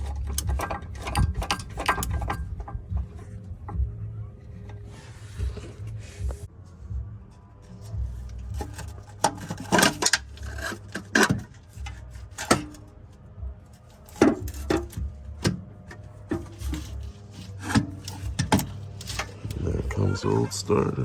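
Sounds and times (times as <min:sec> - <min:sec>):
steady low hum: 0:00.0 - 0:09.2
metal clunks and scraping: 0:00.0 - 0:21.0.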